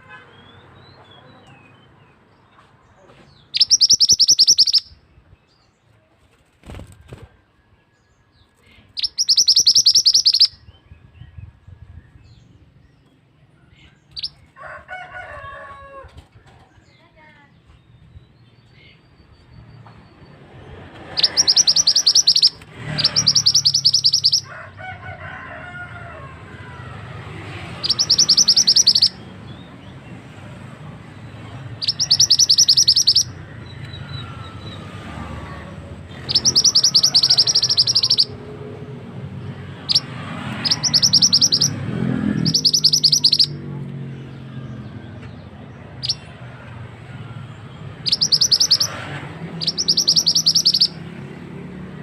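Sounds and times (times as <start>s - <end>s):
bird high-pitched trill: 3.5s - 5.0s, 9.0s - 10.7s, 21.1s - 24.5s, 27.8s - 29.3s, 31.8s - 34.8s, 36.2s - 38.4s, 39.8s - 43.6s, 46.0s - 46.3s, 48.0s - 49.0s, 49.6s - 51.0s.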